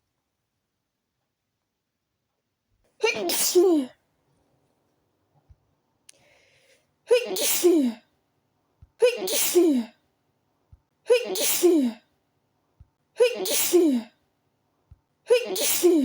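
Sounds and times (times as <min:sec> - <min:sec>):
woman sneezing loudly: 0:03.0 - 0:03.9, 0:07.1 - 0:08.0, 0:09.0 - 0:10.0, 0:11.1 - 0:12.0, 0:13.2 - 0:14.2, 0:15.3 - 0:16.0.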